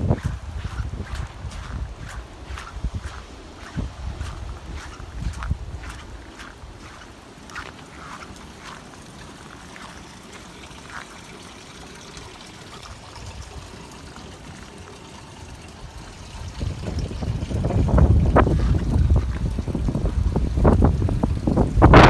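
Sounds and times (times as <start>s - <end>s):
wind gust buffeting microphone: 0.0s - 7.0s, 16.2s - 22.0s.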